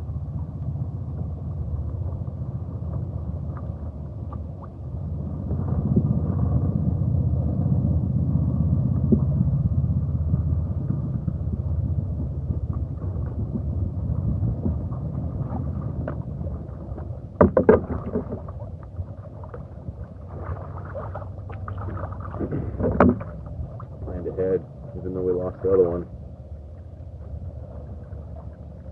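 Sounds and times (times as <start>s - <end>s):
water rumble and paddling: 0.0s - 28.9s
sharp knocks: 17.4s - 18.4s, 22.7s - 23.3s.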